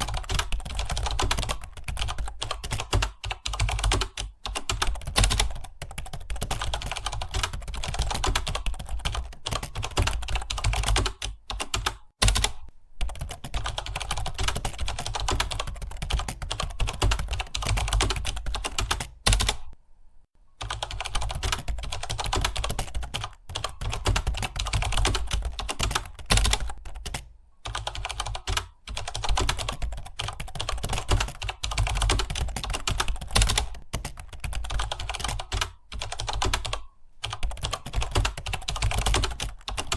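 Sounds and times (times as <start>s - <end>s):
fast keyboard typing: 0.0s - 19.8s, 20.6s - 39.9s.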